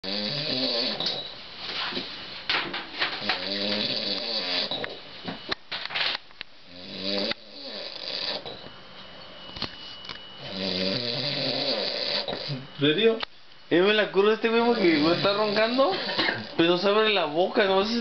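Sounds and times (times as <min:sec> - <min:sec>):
man snoring: 0:00.0 - 0:01.2, 0:03.2 - 0:04.8, 0:06.7 - 0:08.5, 0:10.4 - 0:12.7, 0:14.6 - 0:16.6.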